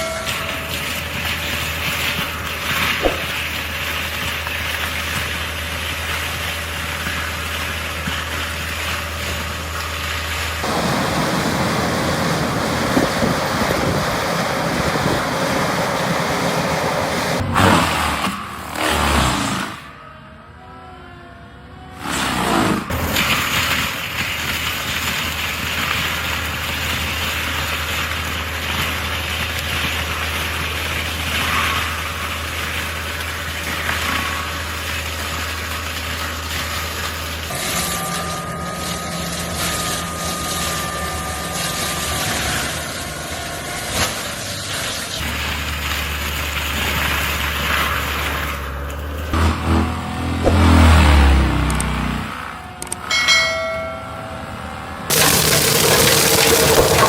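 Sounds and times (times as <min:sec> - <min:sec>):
high whine: 0:37.5 - 0:44.4
low engine hum: 0:45.2 - 0:57.0
rushing grinding noise: 0:55.1 - 0:57.0.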